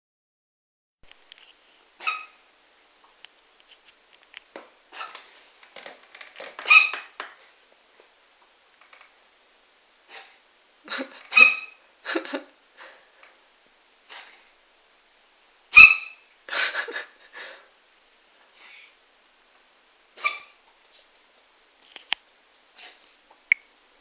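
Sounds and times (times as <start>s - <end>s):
cat sneezing: 4.9s - 5.2s, 10.1s - 10.4s, 11.2s - 11.8s, 14.1s - 14.4s, 20.2s - 20.6s.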